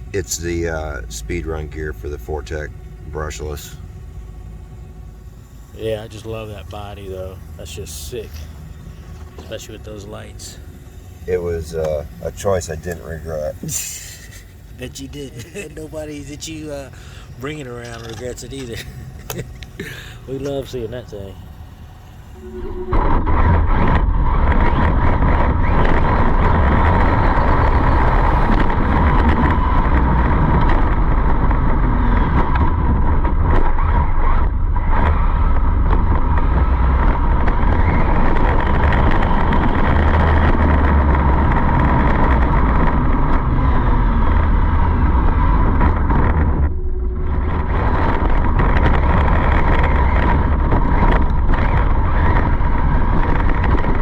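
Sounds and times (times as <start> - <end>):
electric rc car whine: 0.0 - 54.0
wind rumble: 0.0 - 54.0.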